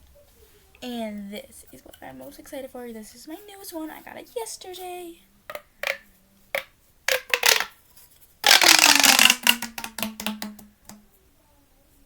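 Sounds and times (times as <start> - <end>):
plastic tube crackling rasp: 5.5 - 6.0, 6.6 - 7.8, 8.4 - 10.7
plastic toy clicks: 6.6 - 7.7, 8.4 - 10.6.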